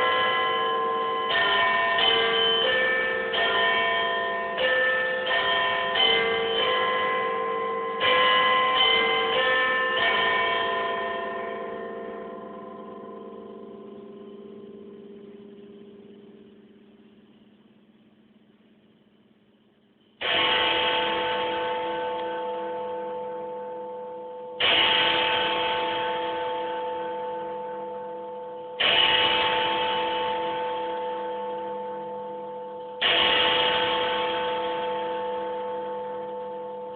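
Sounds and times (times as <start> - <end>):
deep bell striking: 0.0 - 17.5.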